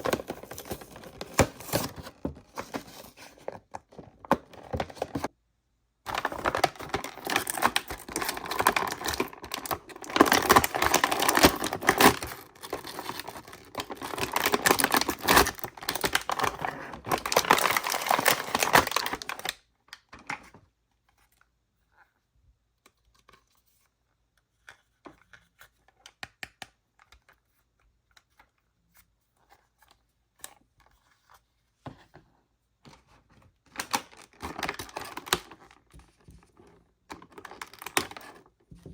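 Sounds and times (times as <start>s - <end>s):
packaging rustling and tearing: 0.0s - 5.3s, 6.1s - 19.6s, 33.7s - 35.9s, 36.6s - 38.5s.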